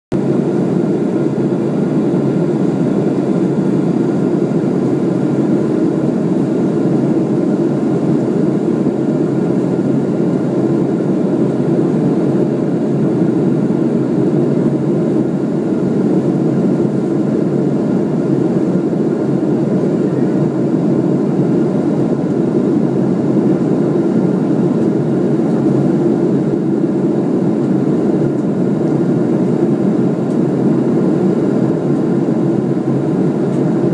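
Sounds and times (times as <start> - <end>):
aircraft cabin drone: 0.1 - 33.9
faint steady whine: 0.2 - 33.9.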